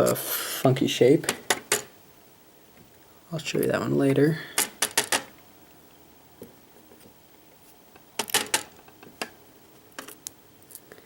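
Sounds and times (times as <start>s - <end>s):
metal lock parts clicking: 8.2s - 9.3s.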